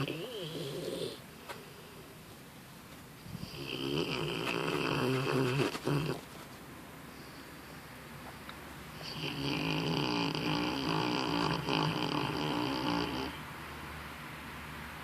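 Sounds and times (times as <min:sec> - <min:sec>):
puppy snoring: 0:00.0 - 0:02.1, 0:03.3 - 0:06.3, 0:09.0 - 0:13.5.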